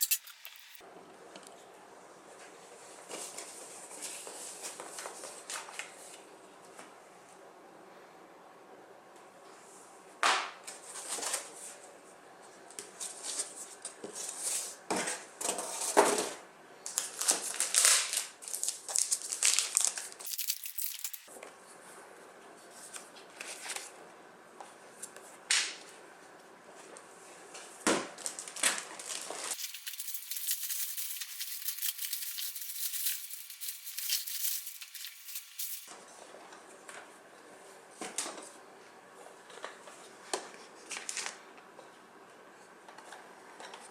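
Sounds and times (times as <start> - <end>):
plastic wrapping crinkling and tearing: 0.0 - 0.8, 16.9 - 21.3, 28.2 - 35.9.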